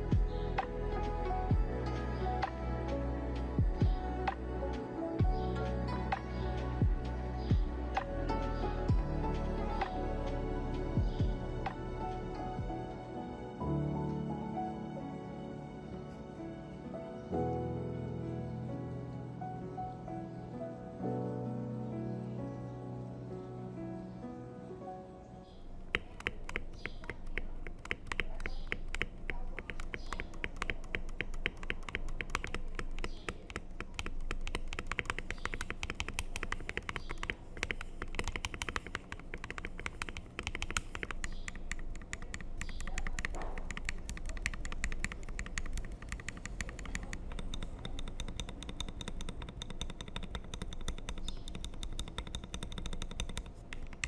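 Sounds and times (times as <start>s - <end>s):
mechanical keyboard typing: 25.8s - 54.0s.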